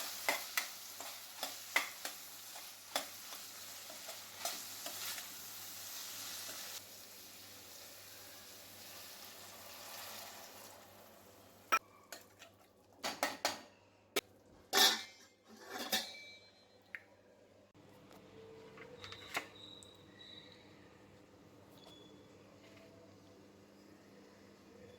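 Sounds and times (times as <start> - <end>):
food sizzling in a frying pan: 0.0 - 11.8
spoon clinking against a pan: 0.1 - 5.1.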